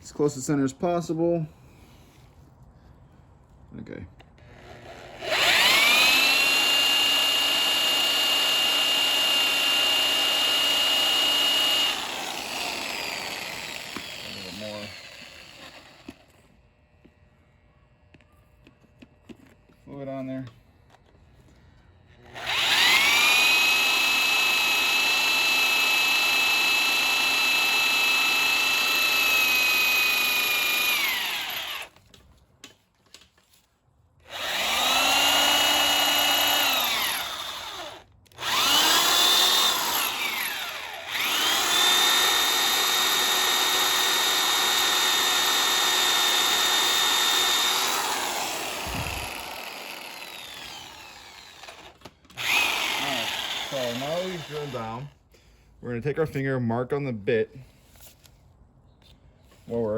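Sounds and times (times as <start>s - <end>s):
hand drill drilling into metal bolt: 4.4s - 16.4s, 22.2s - 32.0s, 34.2s - 55.1s.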